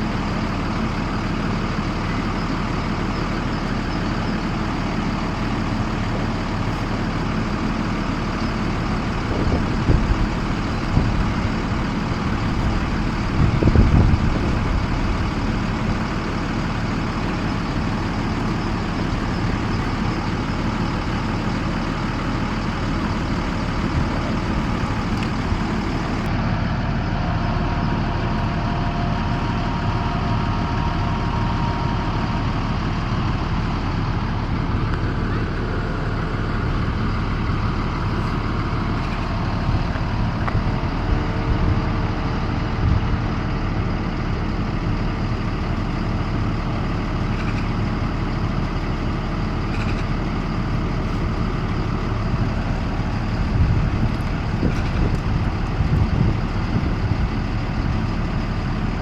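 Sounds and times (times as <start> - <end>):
bus engine idling: 0.0 - 59.0.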